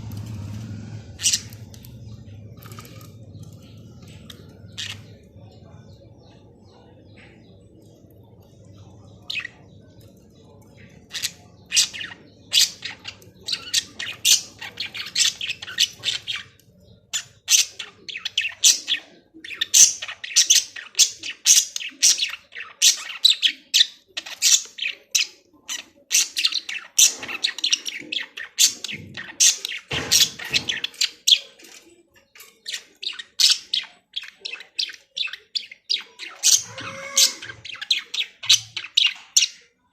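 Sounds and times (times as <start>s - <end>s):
budgerigars chirping and squawking: 0.0s - 39.9s.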